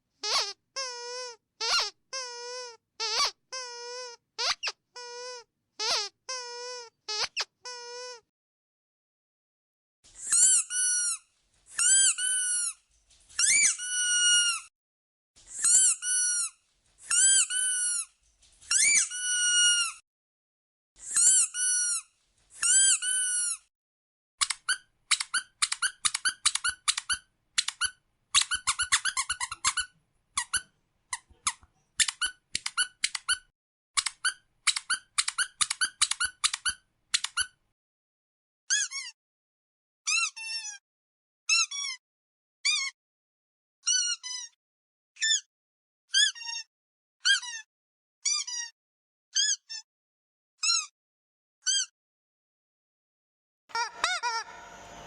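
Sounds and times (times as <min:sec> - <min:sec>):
squeaky dog toy squeaking: 0:00.2 - 0:08.2, 0:10.2 - 0:11.2, 0:11.8 - 0:12.8, 0:13.4 - 0:14.7, 0:15.5 - 0:18.1, 0:18.7 - 0:20.0, 0:21.0 - 0:23.7, 0:24.4 - 0:37.6, 0:38.7 - 0:39.2, 0:40.1 - 0:40.8, 0:41.5 - 0:42.0, 0:42.6 - 0:43.0, 0:43.8 - 0:44.6, 0:45.2 - 0:45.5, 0:46.1 - 0:48.8, 0:49.4 - 0:49.9, 0:50.6 - 0:50.9, 0:51.6 - 0:51.9, 0:53.7 - 0:54.6.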